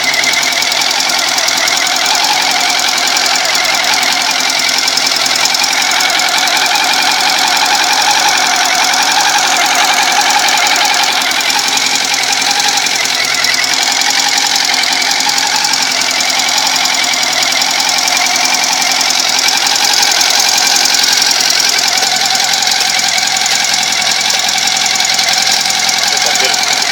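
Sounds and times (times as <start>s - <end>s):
motorcycle engine running: 0.0s - 26.9s
rapid engine ticking clatter: 0.0s - 26.9s.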